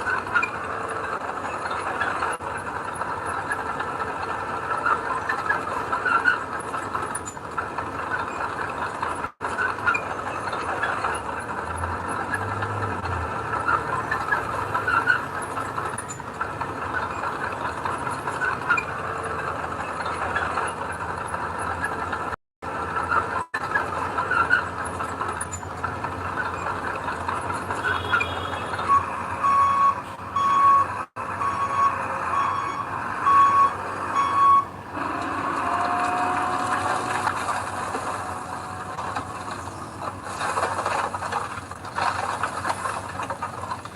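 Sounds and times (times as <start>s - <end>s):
metallic squeaks: 0.0s - 2.4s, 3.2s - 22.2s, 23.0s - 32.9s
reversing alarm beeping: 27.8s - 34.8s
earthmoving machinery running: 30.9s - 43.9s.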